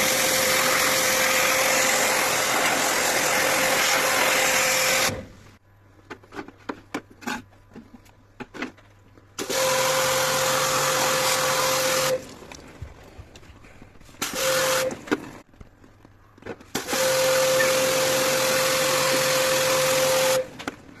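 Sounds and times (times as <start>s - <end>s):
electric motor tool whining: 0.0s - 5.3s, 9.4s - 12.3s, 16.8s - 20.7s.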